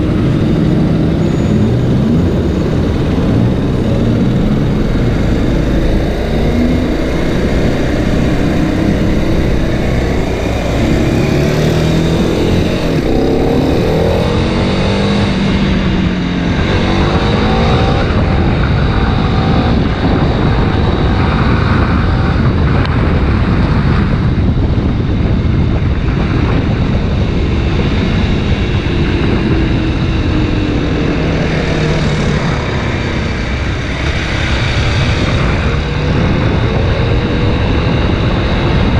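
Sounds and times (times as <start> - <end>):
motorcycle engine revving: 0.0 - 38.9
wind rush on microphone: 0.0 - 38.9.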